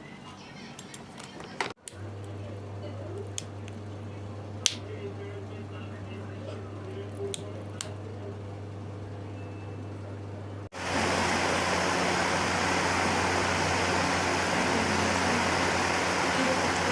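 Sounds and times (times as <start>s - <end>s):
low motor hum: 1.9s - 16.9s
fan air rushing: 10.3s - 16.9s.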